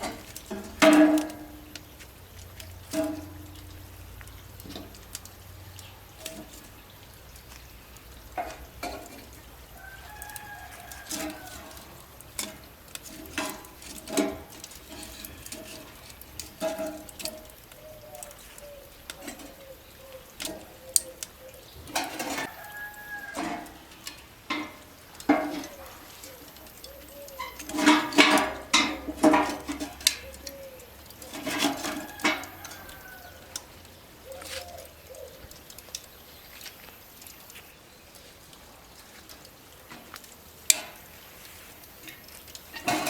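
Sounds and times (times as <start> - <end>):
chickens calling: 0.0 - 38.5.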